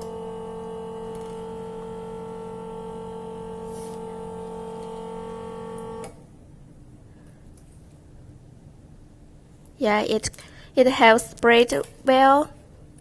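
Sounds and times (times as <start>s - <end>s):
small electric motor humming: 0.0s - 6.2s.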